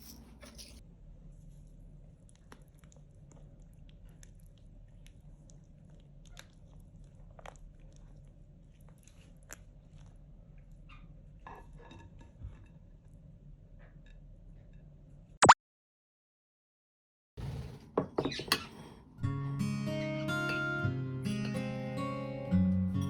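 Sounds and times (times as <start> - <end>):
chewing and crunching food: 0.3 - 11.8.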